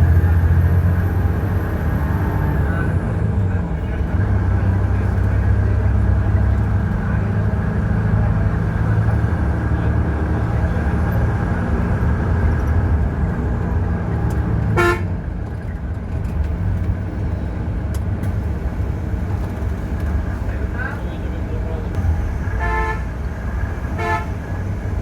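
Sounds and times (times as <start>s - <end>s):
bus diesel engine droning: 0.0s - 25.0s
vehicle horn honk: 14.7s - 15.1s, 22.4s - 23.2s, 23.9s - 24.5s.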